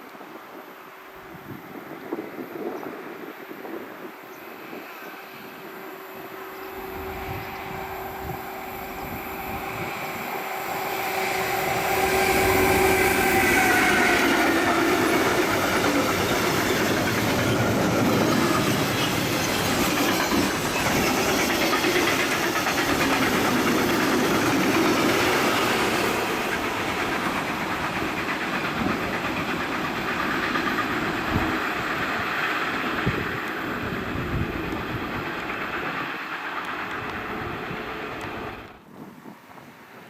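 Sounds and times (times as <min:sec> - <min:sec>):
freight train wheels clattering: 0:07.8 - 0:38.7.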